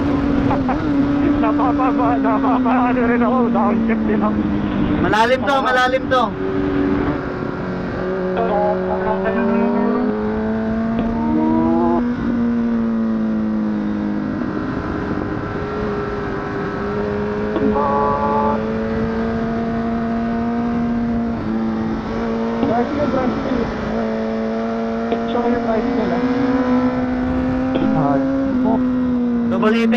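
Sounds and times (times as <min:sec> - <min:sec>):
wind rush: 0:27.0 - 0:28.6.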